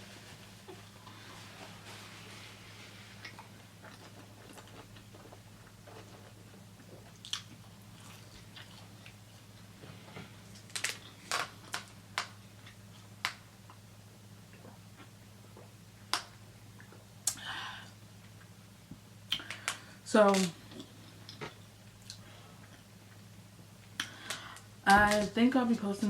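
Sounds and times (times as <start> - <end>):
wet chewing mouth sounds: 3.2 - 9.2.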